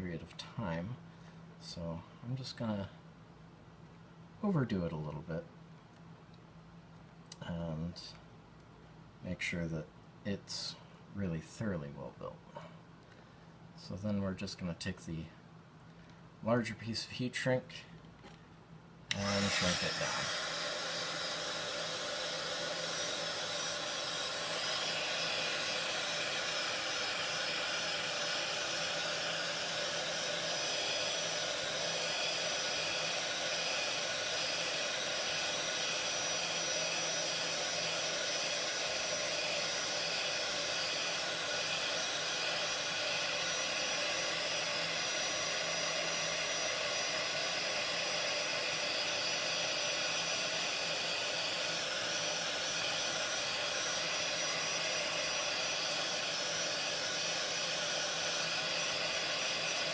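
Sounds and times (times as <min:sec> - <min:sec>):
heat gun fan blowing: 0:19.0 - 0:59.9.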